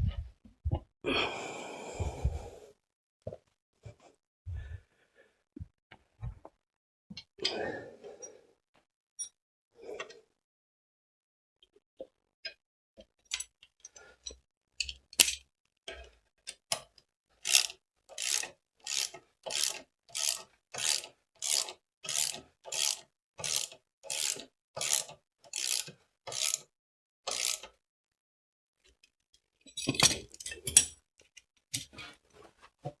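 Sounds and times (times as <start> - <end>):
tools clinking: 14.8 - 15.4, 29.7 - 31.0
ratchet wrench clicking: 17.4 - 26.6, 27.3 - 27.7.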